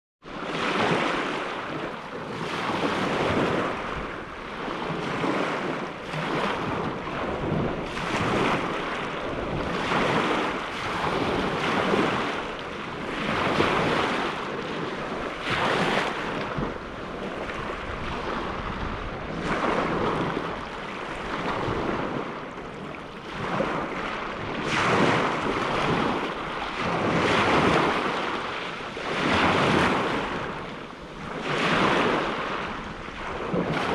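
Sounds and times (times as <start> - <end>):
lake waves breaking: 0.3 - 33.9.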